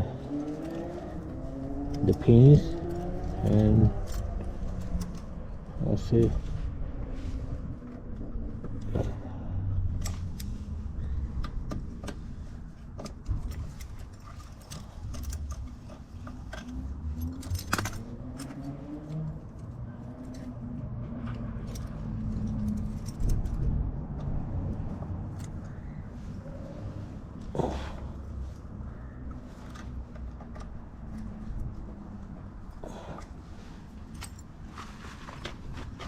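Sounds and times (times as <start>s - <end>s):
metallic clicks of hand tools: 13.0s - 20.6s.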